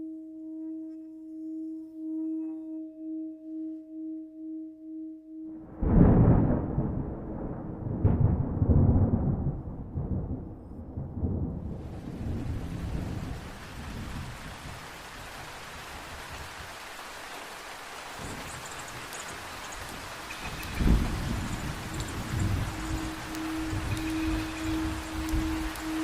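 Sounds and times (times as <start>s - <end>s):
thunder rumbling: 5.6s - 16.7s, 18.2s - 26.0s
heavy rain: 5.6s - 26.0s.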